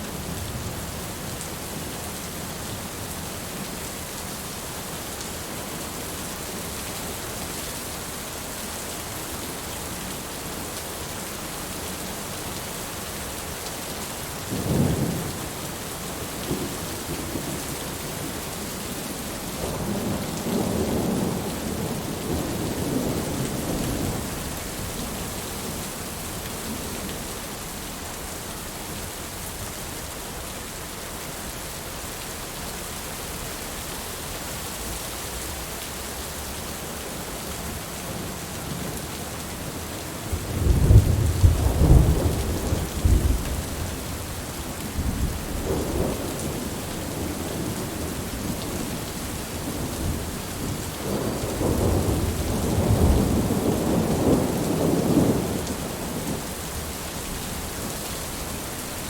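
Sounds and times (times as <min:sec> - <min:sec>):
steady rain falling: 0:00.0 - 0:59.0
thunder rumbling: 0:40.3 - 0:49.0, 0:49.6 - 0:56.4.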